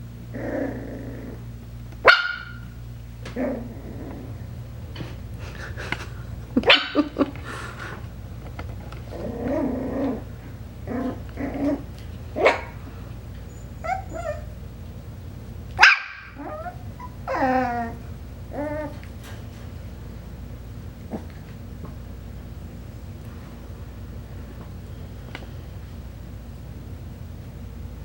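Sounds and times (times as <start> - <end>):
puppy growling: 0.3 - 1.6, 3.2 - 14.6, 15.7 - 19.4, 20.9 - 21.6
puppies barking and yipping: 5.7 - 7.9, 11.0 - 14.6, 15.8 - 19.2
puppy whining yelp: 13.4 - 14.6, 15.8 - 19.0.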